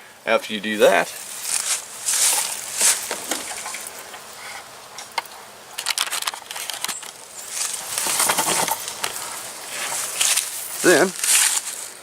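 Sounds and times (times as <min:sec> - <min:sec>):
rustling: 0:01.0 - 0:12.0
crackling clicks: 0:05.0 - 0:11.9.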